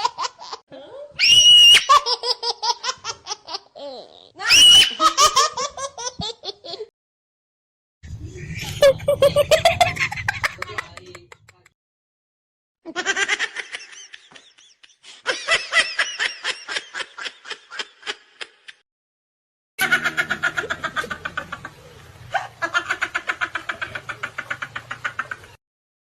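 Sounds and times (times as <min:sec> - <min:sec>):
recorded laughter: 0:08.4 - 0:11.7, 0:12.9 - 0:18.8, 0:19.8 - 0:25.6.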